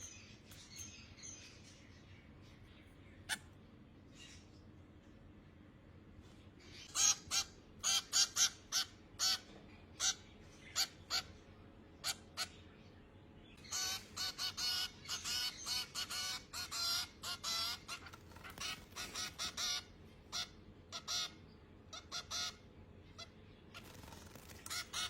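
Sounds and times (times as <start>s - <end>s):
finch chick begging calls: 6.9s - 9.4s, 10.0s - 11.4s, 13.6s - 25.0s.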